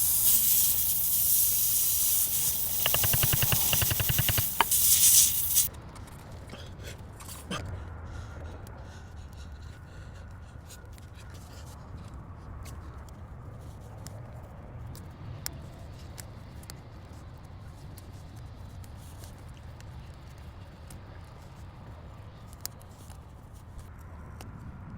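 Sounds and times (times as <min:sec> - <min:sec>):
hand tools clicking and scraping: 0:00.0 - 0:05.7.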